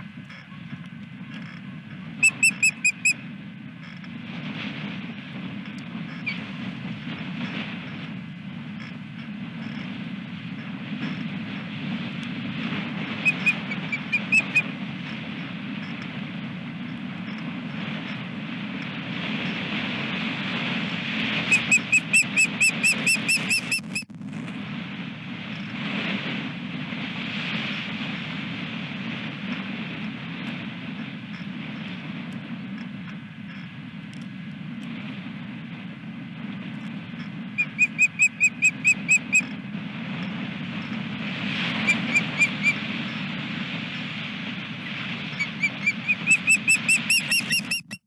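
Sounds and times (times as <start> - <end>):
wind noise on microphone: 0.0 - 48.0
osprey whistled chirps: 2.2 - 3.2, 13.2 - 14.7, 21.5 - 24.1, 37.6 - 39.5, 41.8 - 42.8, 45.3 - 48.0.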